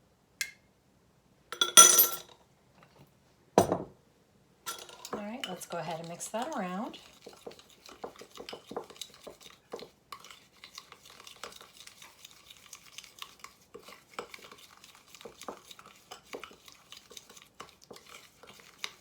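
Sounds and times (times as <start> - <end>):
utensil stirring paste in bowl: 4.7 - 19.0.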